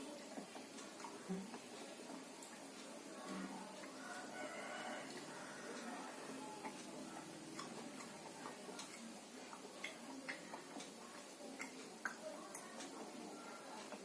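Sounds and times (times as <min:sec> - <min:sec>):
eating clicks and smacks: 0:00.1 - 0:02.9, 0:06.6 - 0:13.2.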